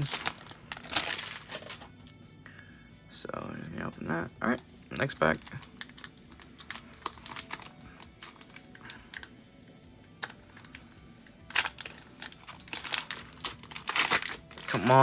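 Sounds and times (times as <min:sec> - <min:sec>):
foil pack and cards crinkling: 0:00.0 - 0:02.2, 0:05.0 - 0:09.4, 0:10.1 - 0:15.0.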